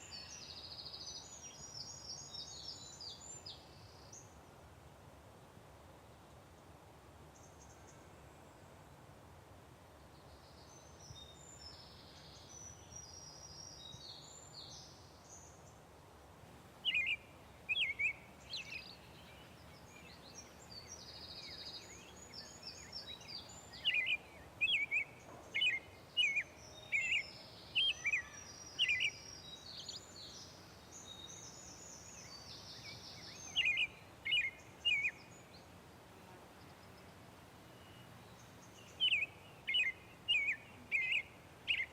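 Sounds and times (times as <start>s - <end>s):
birds singing: 0.0s - 4.3s, 16.8s - 35.8s, 36.5s - 41.9s
faint steady hiss: 0.0s - 41.9s.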